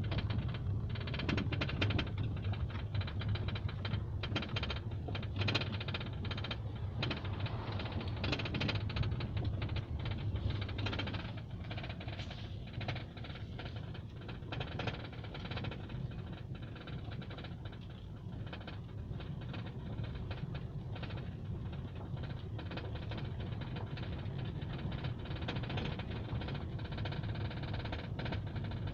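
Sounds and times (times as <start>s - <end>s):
short knocks and rattles: 0.0s - 17.8s
car road rumble: 0.0s - 25.2s.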